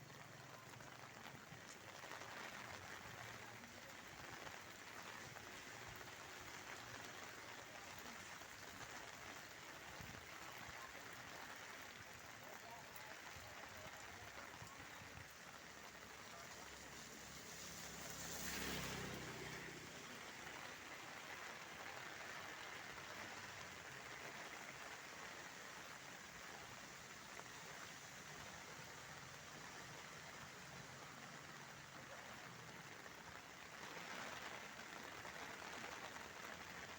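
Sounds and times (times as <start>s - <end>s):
heavy rain falling: 0.0s - 36.9s
vehicle passing: 16.6s - 21.0s.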